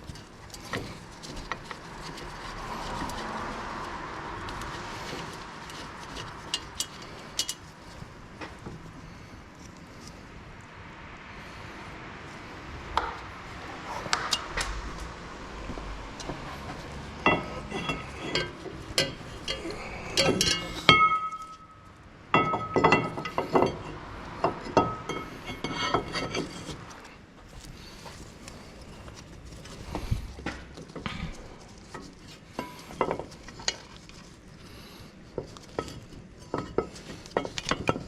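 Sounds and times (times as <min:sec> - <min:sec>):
metal tools clinking and clanking: 0:04.4 - 0:08.0, 0:16.1 - 0:27.1, 0:29.7 - 0:34.0, 0:35.4 - 0:38.0.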